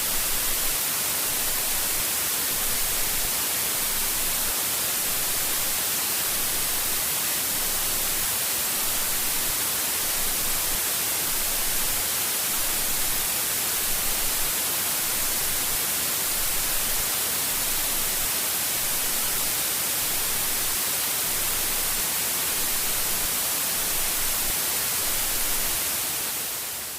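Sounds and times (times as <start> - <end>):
white noise static: 0.0 - 26.9.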